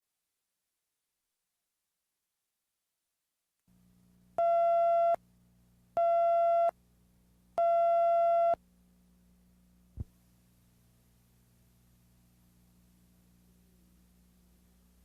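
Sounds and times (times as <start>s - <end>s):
faint low hum: 3.7s - 15.0s.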